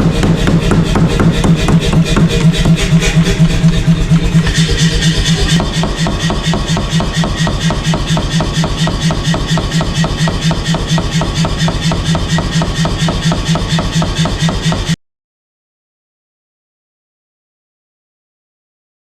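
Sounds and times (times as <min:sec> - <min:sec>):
machine humming: 0:00.0 - 0:14.9
power hammer striking steel: 0:00.0 - 0:15.0.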